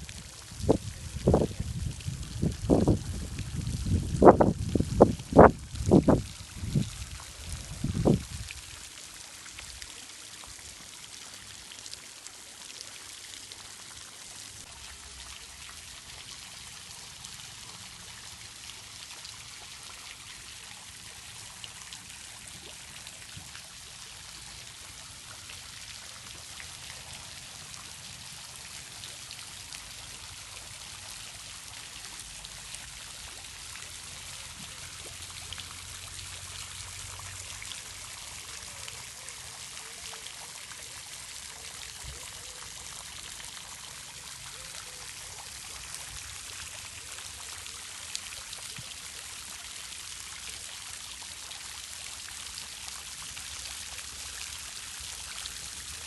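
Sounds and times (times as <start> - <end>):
running water trickling: 0.0 - 56.0.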